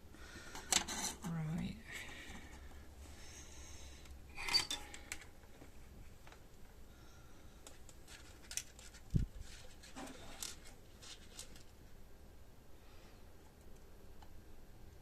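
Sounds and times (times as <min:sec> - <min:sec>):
metallic clicks of tools and parts: 0:04.4 - 0:05.3.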